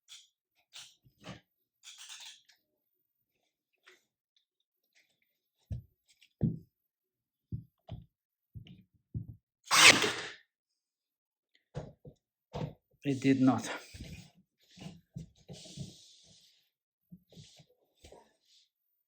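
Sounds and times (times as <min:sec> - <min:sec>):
nail gun shot: 0:09.7 - 0:10.4.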